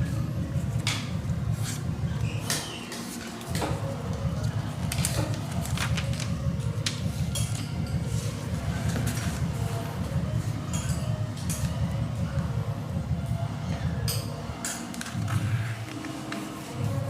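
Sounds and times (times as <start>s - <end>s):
steady low rumble: 0.0s - 2.4s, 3.7s - 14.6s
paper crackling and rustling: 4.4s - 7.6s.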